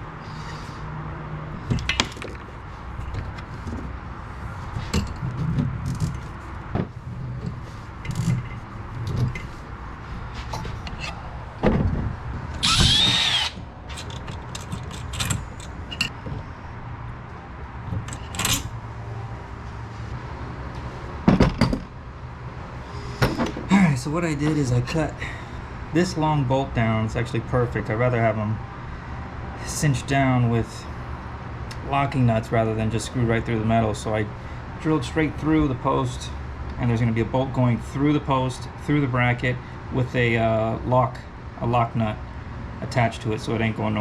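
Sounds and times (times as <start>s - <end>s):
power drill whining: 12.6s - 13.6s
tools and metal parts clicking: 12.6s - 16.1s, 17.9s - 18.7s.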